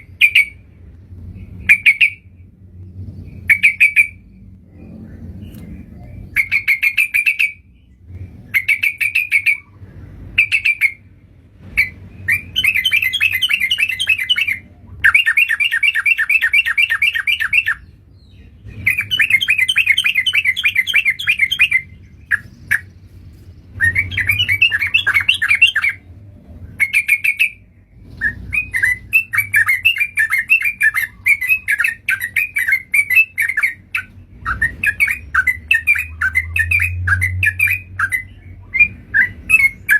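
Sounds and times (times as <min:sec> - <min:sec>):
bird chattering calls: 0:05.5 - 0:07.7, 0:11.8 - 0:23.0, 0:23.6 - 0:26.1, 0:26.7 - 0:39.9.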